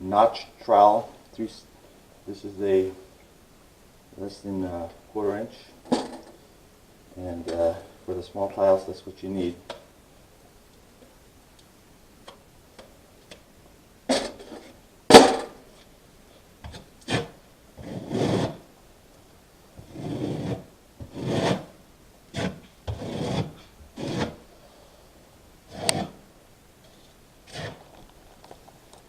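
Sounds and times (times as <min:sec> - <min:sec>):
trowel scraping adhesive: 0:16.7 - 0:18.6, 0:19.8 - 0:21.7, 0:22.3 - 0:24.4, 0:25.7 - 0:26.2, 0:27.5 - 0:28.0.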